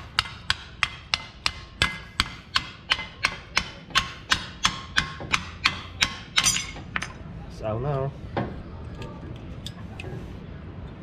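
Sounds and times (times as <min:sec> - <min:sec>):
hammer striking metal: 0:00.0 - 0:07.1.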